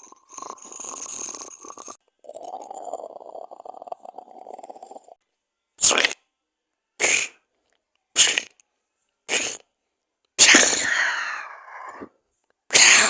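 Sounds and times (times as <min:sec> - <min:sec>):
person making raspy creature sounds: 0:07.0 - 0:07.4, 0:09.3 - 0:09.6.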